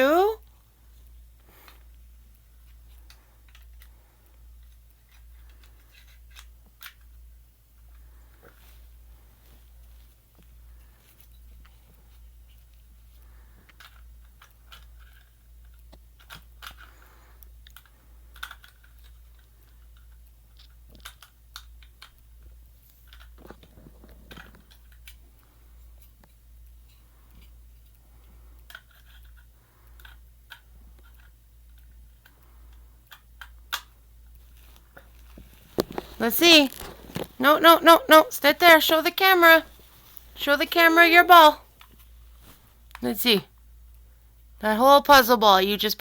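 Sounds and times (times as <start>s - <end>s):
low steady hum: 0.0s - 46.0s
puzzle pieces clicking: 17.7s - 22.2s.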